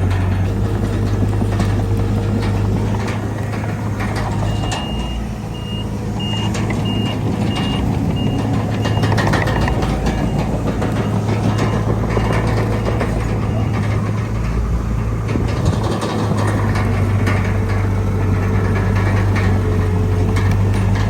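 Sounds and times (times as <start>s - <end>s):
heavy diesel engine running: 0.0s - 21.0s
metallic clanks: 0.0s - 21.0s
reversing alarm beeping: 3.6s - 14.1s.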